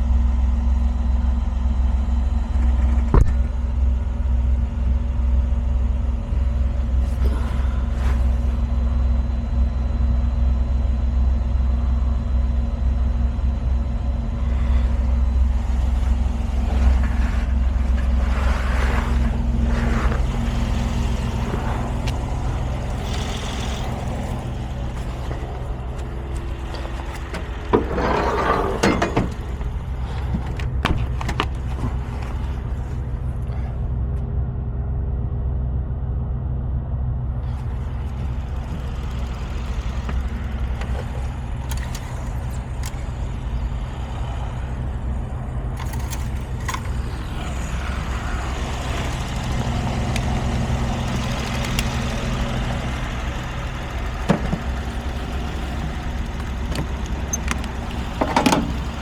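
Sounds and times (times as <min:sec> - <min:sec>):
diesel engine idling: 0:00.0 - 0:59.0
clunk: 0:02.6 - 0:03.6, 0:15.6 - 0:33.0, 0:49.0 - 0:59.0.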